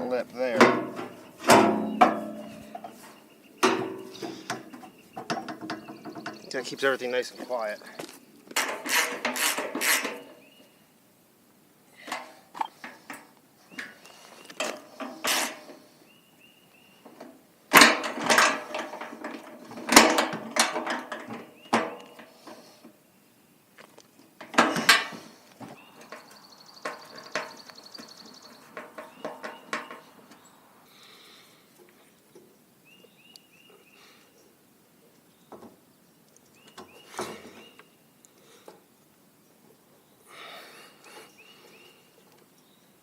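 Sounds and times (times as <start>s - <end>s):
metal parts clanking and rattling: 8.6s - 10.2s, 17.7s - 22.0s.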